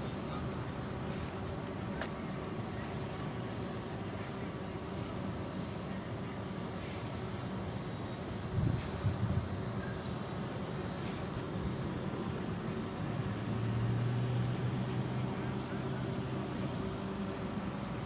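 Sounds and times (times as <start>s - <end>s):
high insect drone: 0.0s - 18.0s
low engine-like hum: 0.0s - 18.0s
insect chirps: 7.2s - 18.0s.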